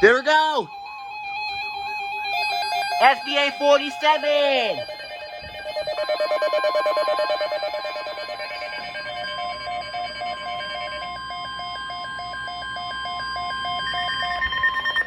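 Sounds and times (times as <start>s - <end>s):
steady electronic alarm tone: 0.0s - 15.0s
pulsing warbling alert tone: 2.3s - 12.0s.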